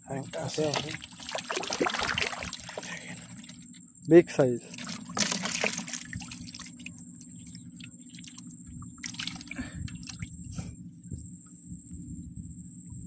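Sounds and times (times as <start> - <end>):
steady low hum: 0.0 - 13.0
water splashing: 0.2 - 3.7, 4.6 - 8.4, 9.0 - 10.3.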